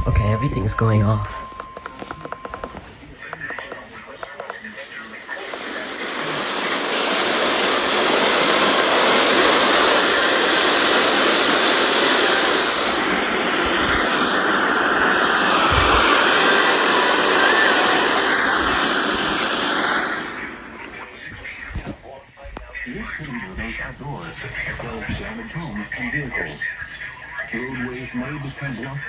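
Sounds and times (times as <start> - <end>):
broadcast voice: 0.0 - 10.0, 20.2 - 29.0
radio static hiss: 0.0 - 29.0.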